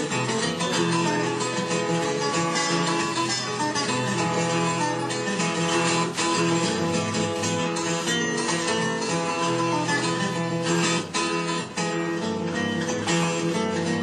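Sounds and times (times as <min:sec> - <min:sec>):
fingerpicked blues guitar: 0:00.0 - 0:14.0.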